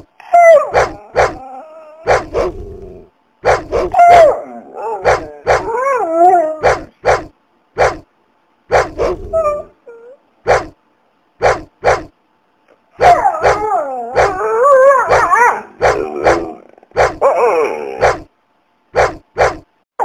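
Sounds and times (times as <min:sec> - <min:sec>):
dog barking: 0:00.6 - 0:01.4, 0:02.0 - 0:02.6, 0:03.4 - 0:04.4, 0:05.0 - 0:05.8, 0:06.6 - 0:08.0, 0:08.7 - 0:09.2, 0:13.0 - 0:13.6, 0:15.0 - 0:17.3
dog drawn-out cries: 0:03.5 - 0:07.2, 0:13.0 - 0:17.4.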